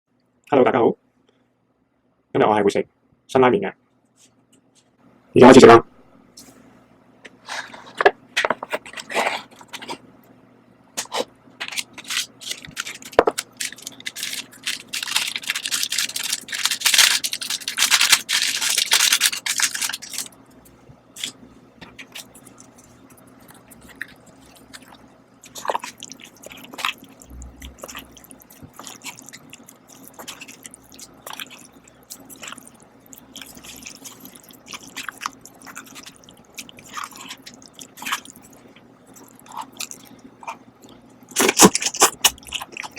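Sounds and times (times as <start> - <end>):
person chewing: 11.0 - 42.9
noisy slurping: 21.2 - 42.9.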